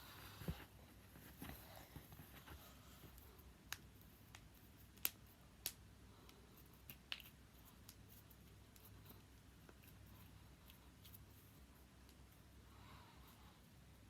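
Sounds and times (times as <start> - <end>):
knuckles cracking: 3.7 - 9.8.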